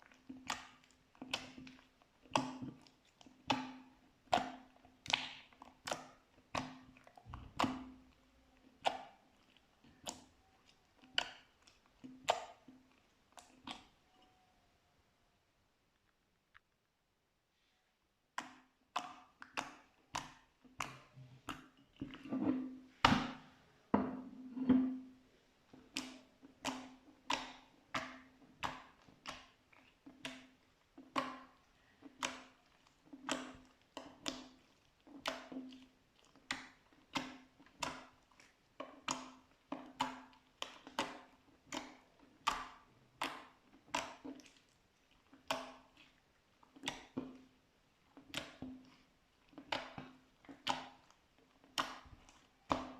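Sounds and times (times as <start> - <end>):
slime squelching by hand: 0.0 - 14.4, 18.3 - 23.6, 25.2 - 52.9.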